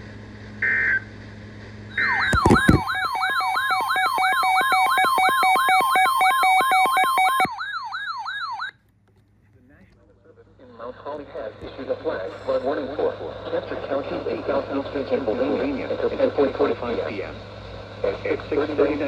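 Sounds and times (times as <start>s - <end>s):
electronic siren warbling: 1.9s - 8.7s
data tone bursts: 2.0s - 7.5s.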